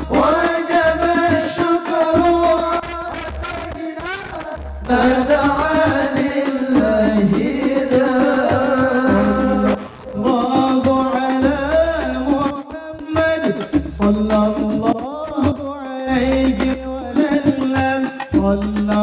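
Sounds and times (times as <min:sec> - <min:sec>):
low drum beat: 0:02.1 - 0:19.0
ornamented melodic line: 0:06.7 - 0:14.8.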